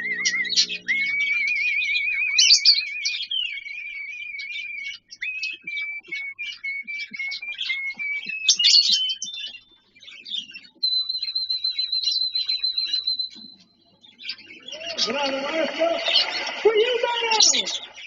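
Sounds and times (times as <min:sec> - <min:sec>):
cockatiel whistling: 0:00.0 - 0:09.8, 0:10.4 - 0:13.6
bird chirps: 0:00.0 - 0:18.0.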